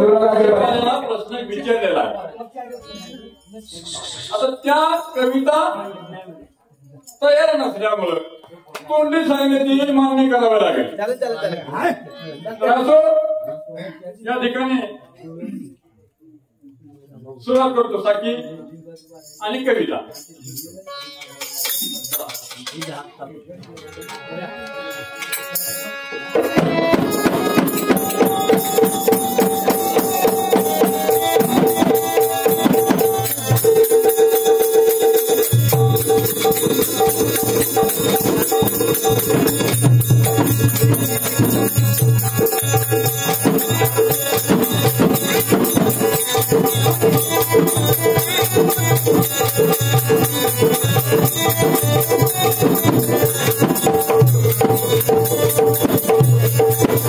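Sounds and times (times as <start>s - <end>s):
jingling tambourine-like percussion: 18.8s - 23.1s, 23.7s - 57.0s
drum: 26.4s - 57.0s.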